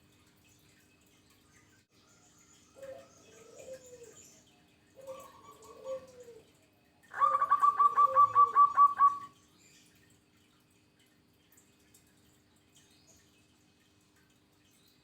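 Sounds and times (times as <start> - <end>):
dove cooing: 2.8 - 4.2, 5.0 - 6.5, 7.1 - 9.3.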